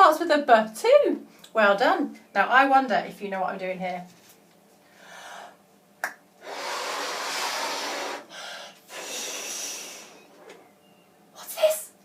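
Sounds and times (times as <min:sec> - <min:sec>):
person blowing up a balloon: 0:06.4 - 0:10.4.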